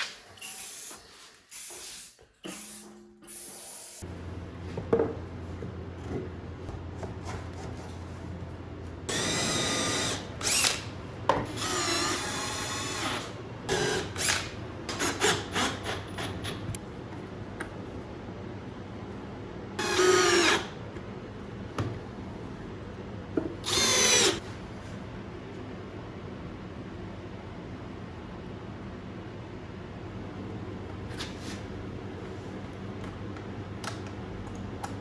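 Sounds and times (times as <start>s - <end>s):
power drill whining into wood: 9.1s - 10.8s, 11.5s - 14.4s, 19.8s - 20.7s, 23.6s - 24.4s.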